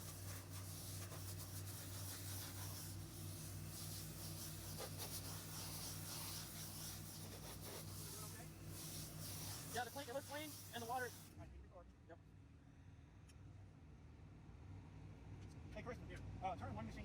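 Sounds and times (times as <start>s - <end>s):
light hiss: 0.0s - 11.3s
pressure washer engine hum: 0.0s - 11.3s.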